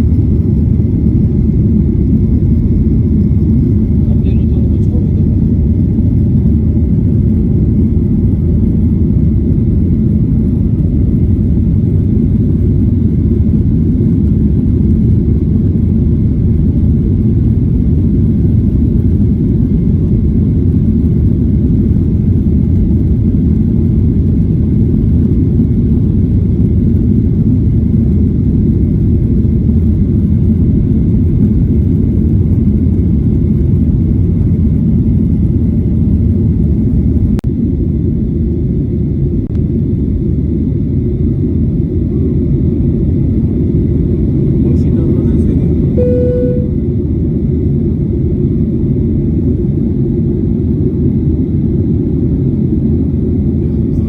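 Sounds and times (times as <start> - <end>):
jet engine rumble in cabin: 0.0 - 54.0
faint high steady tone: 46.0 - 46.8.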